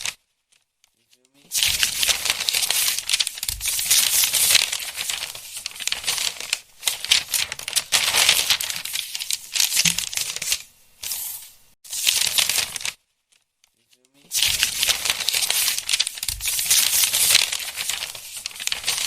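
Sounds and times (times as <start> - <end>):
book pages rustling and flipping: 0.0 - 19.0.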